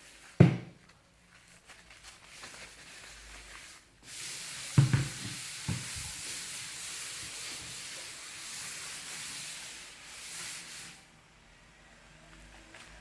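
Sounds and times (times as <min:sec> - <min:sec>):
tap water running: 0:04.0 - 0:09.6.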